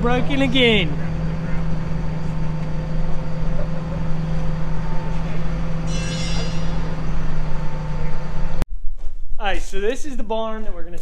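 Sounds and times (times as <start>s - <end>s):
high-pitched squeal: 0.0s - 8.3s
tractor engine running: 0.0s - 8.6s.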